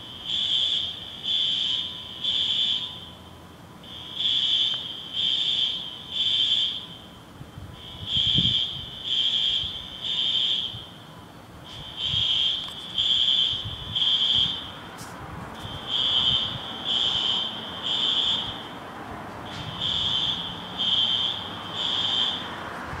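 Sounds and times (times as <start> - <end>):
fire alarm horn blasts: 0.0 - 18.8, 19.4 - 22.7.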